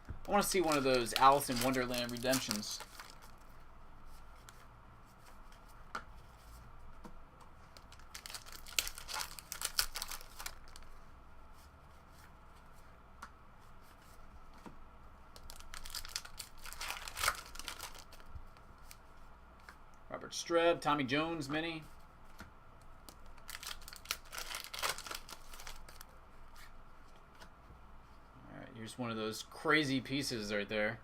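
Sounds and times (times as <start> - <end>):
wrappers tearing and crinkling: 0.3 - 3.4, 7.9 - 10.9, 15.4 - 18.3, 23.1 - 26.1
cards being shuffled: 0.3 - 3.5, 15.3 - 19.0, 23.0 - 26.7.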